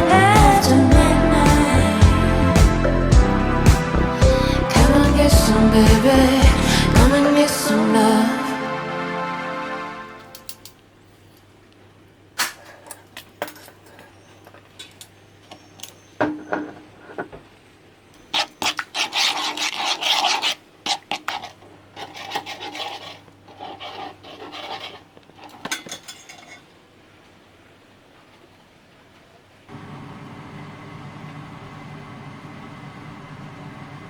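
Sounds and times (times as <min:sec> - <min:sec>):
rubbing and scraping: 0:18.3 - 0:26.6.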